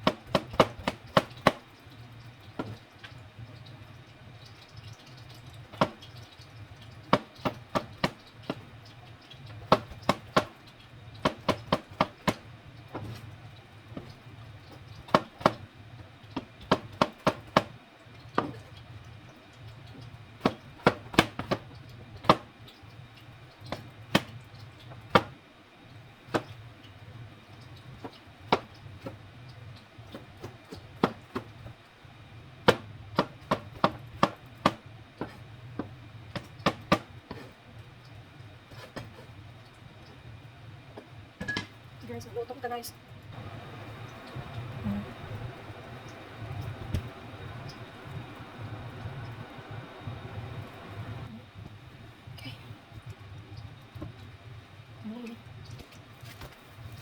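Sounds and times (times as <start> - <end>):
knife chopping on cutting board: 0.0 - 1.6, 7.1 - 8.6, 9.7 - 10.5, 11.2 - 12.4, 15.1 - 15.6, 16.6 - 17.8, 20.4 - 21.6, 22.2 - 22.5, 24.1 - 24.4, 25.1 - 25.4, 30.1 - 31.5, 32.7 - 37.5, 38.7 - 39.2.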